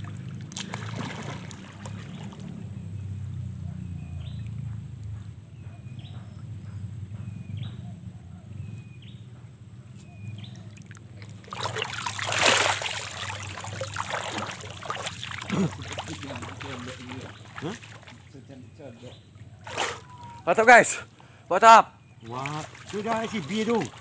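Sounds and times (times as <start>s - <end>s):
water sloshing and splashing: 0.0s - 2.8s, 10.5s - 20.9s, 22.2s - 24.0s
steady low hum: 0.0s - 24.0s.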